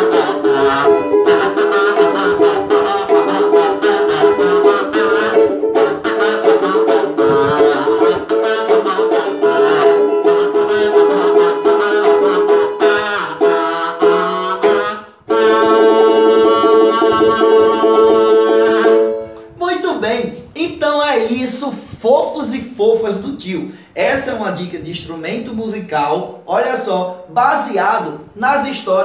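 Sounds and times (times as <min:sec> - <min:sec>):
kazoo buzzing a melody: 0:00.0 - 0:19.4
plucked string accompaniment: 0:00.0 - 0:20.8.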